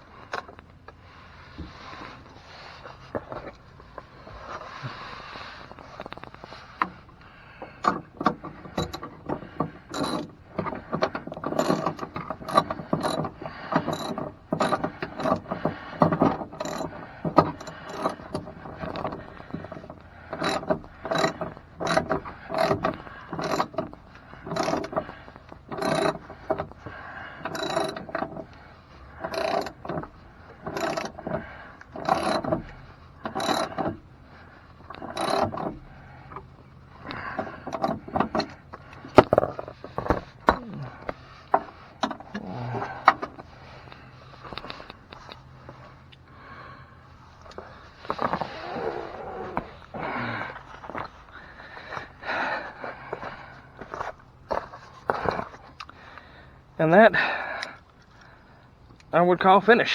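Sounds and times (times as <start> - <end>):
ratchet wrench clicking: 16.5 - 19.0, 27.4 - 28.2, 29.3 - 29.9, 33.3 - 33.9.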